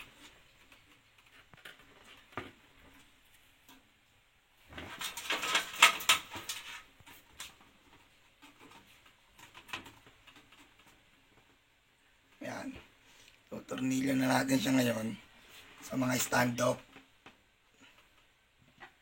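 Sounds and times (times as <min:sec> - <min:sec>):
scraping and clicking: 0:04.7 - 0:11.6
motherboard handling clicks and knocks: 0:04.9 - 0:07.6.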